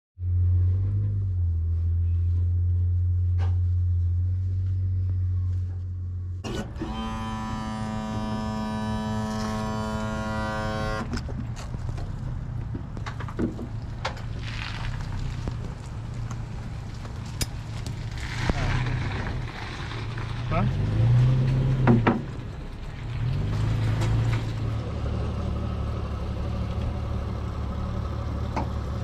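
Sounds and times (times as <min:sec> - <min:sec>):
low rumble: 0:00.2 - 0:06.5
low engine drone: 0:00.2 - 0:13.2
long horn blast: 0:06.5 - 0:11.2.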